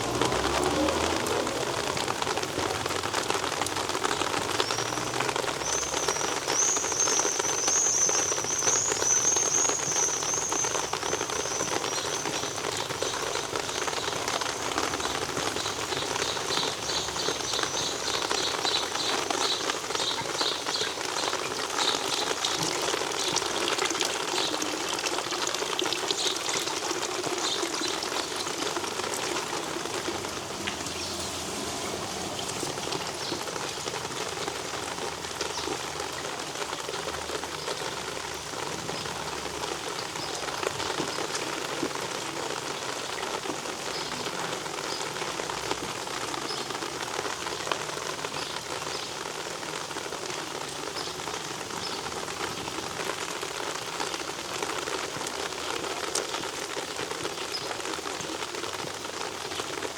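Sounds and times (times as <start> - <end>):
steady rain falling: 0.0 - 59.9
bird singing: 4.6 - 22.3.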